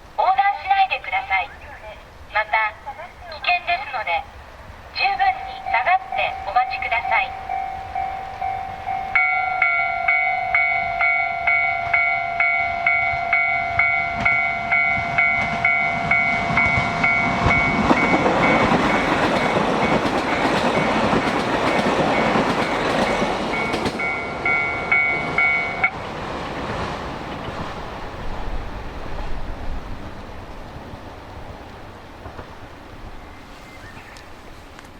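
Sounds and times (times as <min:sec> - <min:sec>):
diesel train passing: 0:00.0 - 0:34.6
railroad crossing bell ringing: 0:05.1 - 0:26.0.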